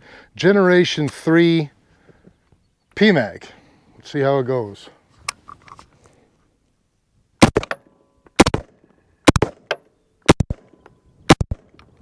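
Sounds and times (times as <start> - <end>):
rifle shots with echo: 7.4 - 10.7.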